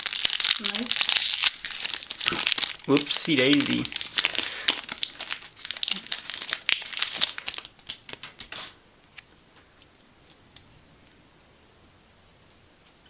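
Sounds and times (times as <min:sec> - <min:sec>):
foil wrapper crinkling and tearing: 0:00.0 - 0:08.8.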